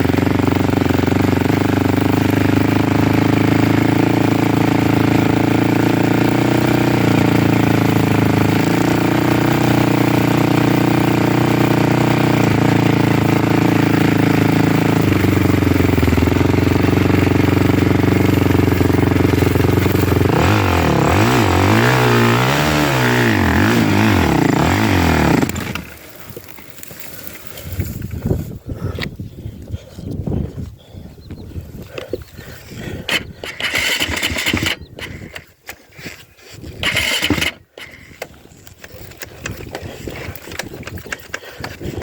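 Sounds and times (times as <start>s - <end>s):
vehicle engine running and revving: 0.0s - 27.6s.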